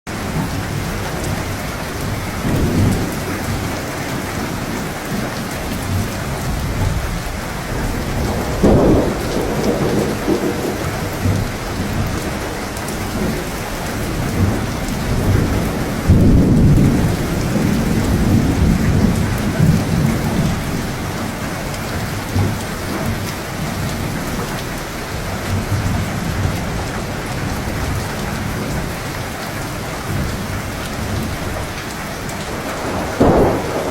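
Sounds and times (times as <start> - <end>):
heavy rain falling: 0.1 - 33.9
low thunder rumbling: 0.1 - 33.9.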